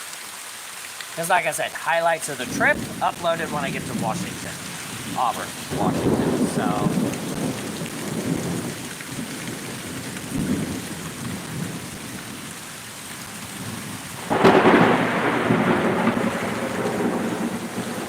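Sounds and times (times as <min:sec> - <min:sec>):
rain falling: 0:00.0 - 0:18.0
loud thunder crack: 0:02.5 - 0:11.8, 0:13.6 - 0:18.0
low rolling thunder: 0:02.5 - 0:12.6, 0:13.3 - 0:18.0.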